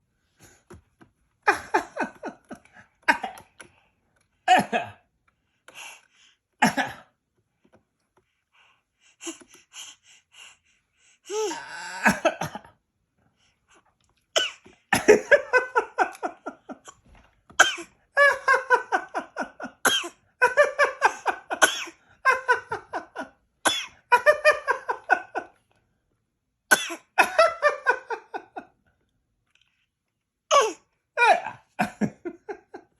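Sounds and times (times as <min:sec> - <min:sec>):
baby fake coughing: 0:14.4 - 0:15.2, 0:17.6 - 0:17.9, 0:19.8 - 0:20.2, 0:21.6 - 0:22.0, 0:23.6 - 0:24.1, 0:26.7 - 0:27.4.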